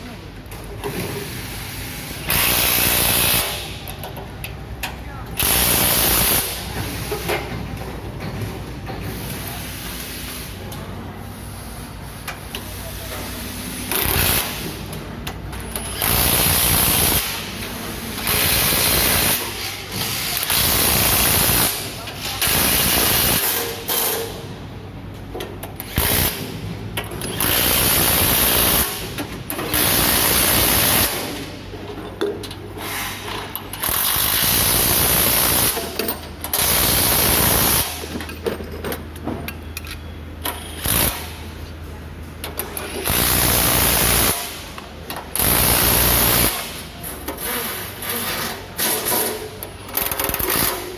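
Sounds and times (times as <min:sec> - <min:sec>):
power tool bursts: 0:02.2 - 0:03.7, 0:15.9 - 0:17.4, 0:40.7 - 0:41.3.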